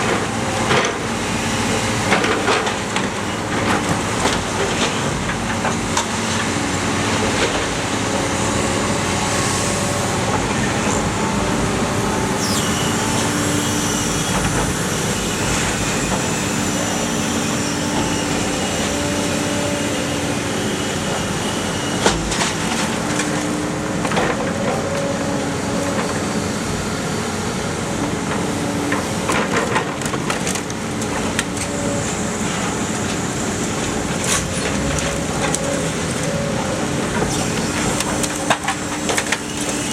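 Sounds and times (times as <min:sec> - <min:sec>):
machine drone: 0:00.0 - 0:39.9
high squeal: 0:08.2 - 0:22.7.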